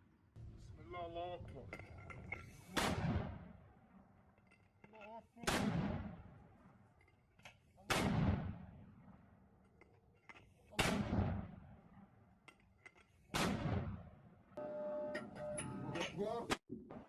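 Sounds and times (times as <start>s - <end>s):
heavy weapons fire echoing: 2.8s - 3.7s, 5.5s - 6.4s, 7.9s - 8.8s, 13.4s - 14.0s.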